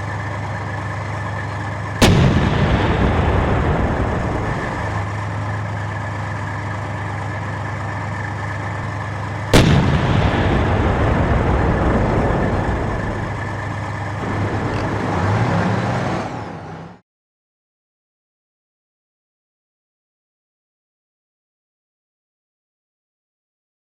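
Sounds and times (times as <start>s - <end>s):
rumbling: 0.0s - 16.8s
tank engine running: 0.0s - 17.0s
loud cannon shot: 2.0s - 5.2s, 9.5s - 14.2s.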